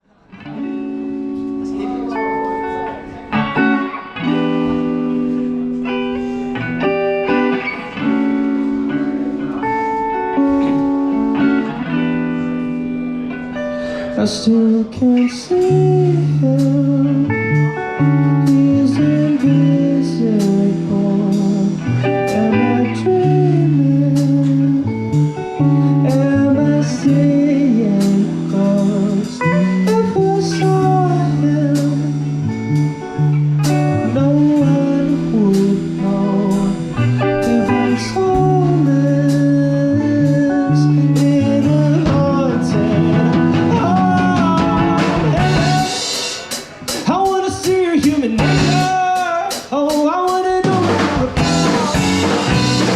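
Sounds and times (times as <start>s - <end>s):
blues rock band playing: 0.4s - 52.9s
person singing: 13.5s - 52.9s.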